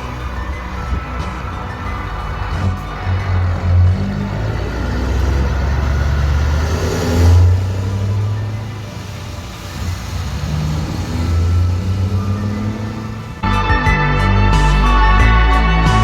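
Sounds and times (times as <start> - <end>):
truck diesel engine pulling away: 0.0 - 16.0.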